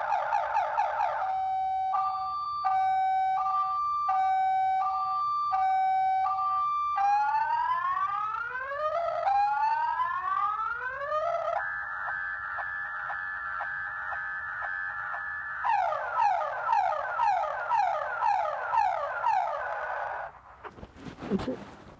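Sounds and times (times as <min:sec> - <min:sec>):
car alarm siren: 0:00.0 - 0:20.4.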